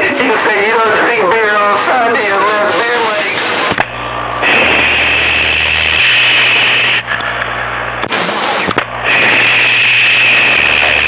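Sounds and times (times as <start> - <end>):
radio static hiss: 0.0 - 11.0
sharp click: 3.7 - 4.0, 6.4 - 8.9.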